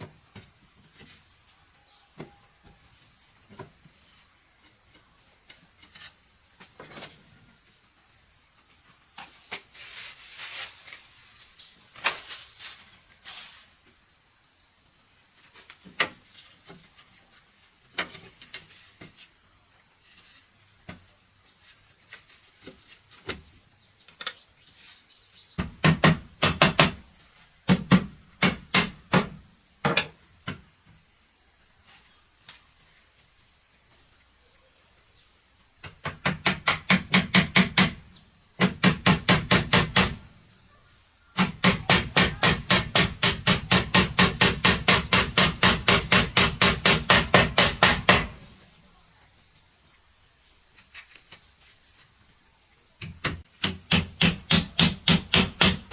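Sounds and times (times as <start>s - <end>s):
hammer striking wood: 25.6s - 27.0s, 27.7s - 30.6s, 35.8s - 38.0s, 38.6s - 40.3s, 41.4s - 48.4s, 53.0s - 55.9s.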